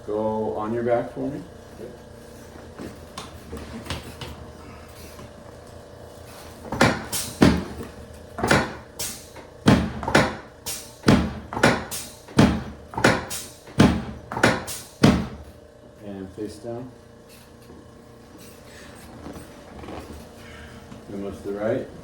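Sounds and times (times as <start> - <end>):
sharp knocks: 6.7 - 7.8, 8.4 - 15.5.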